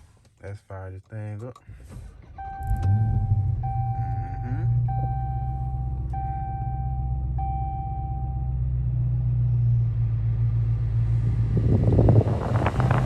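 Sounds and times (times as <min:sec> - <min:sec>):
car engine starting and idling: 0:01.2 - 0:13.0
dashboard warning chime: 0:02.4 - 0:08.6.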